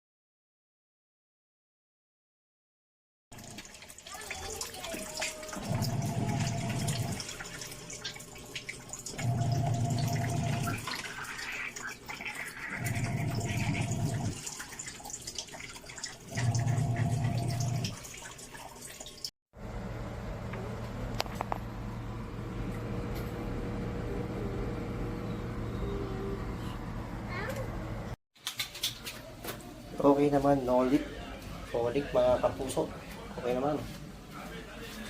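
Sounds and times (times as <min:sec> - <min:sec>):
washing machine motor humming: 0:03.4 - 0:18.4, 0:19.6 - 0:28.2
water sloshing and splashing: 0:03.4 - 0:19.3.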